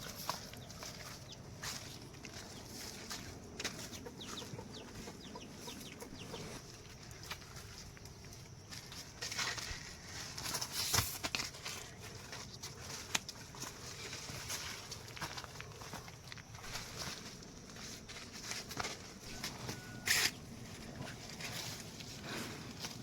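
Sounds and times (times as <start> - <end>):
chickens clucking: 0.0 - 7.0.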